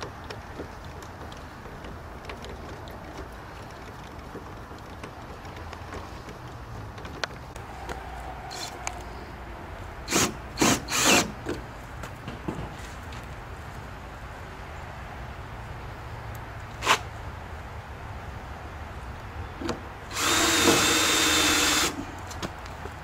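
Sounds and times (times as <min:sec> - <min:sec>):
small clicks and knocks of parts: 0:00.0 - 0:07.6
power screwdriver driving screws: 0:10.1 - 0:11.3, 0:20.1 - 0:22.0.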